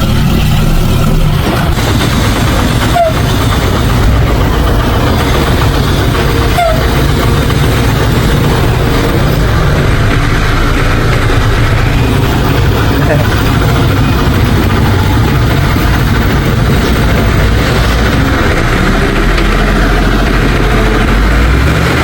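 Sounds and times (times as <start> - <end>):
diesel engine running under load: 0.0 - 22.0
squeaks and clicks: 0.2 - 9.5.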